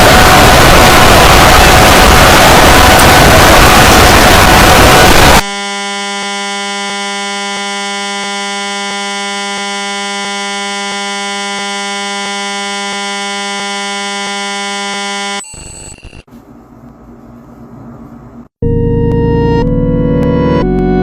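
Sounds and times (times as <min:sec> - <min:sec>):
harsh static burst: 0:00.0 - 0:05.4
low electronic buzz tone: 0:00.0 - 0:16.2.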